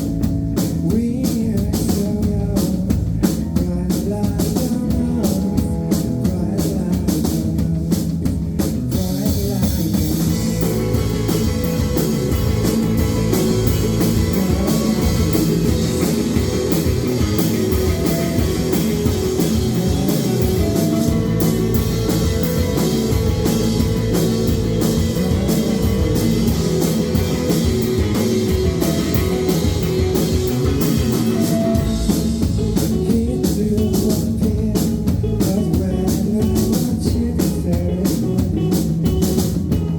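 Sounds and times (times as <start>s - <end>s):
drum kit beat: 0.0s - 39.9s
rock band playing live: 0.0s - 39.9s.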